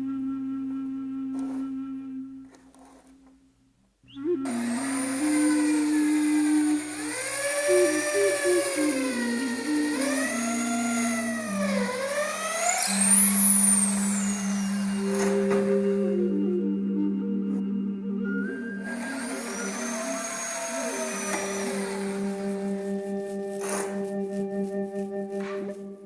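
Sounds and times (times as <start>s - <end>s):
power tool whining: 0.0s - 3.2s, 4.2s - 26.0s
soft background music: 15.1s - 26.0s.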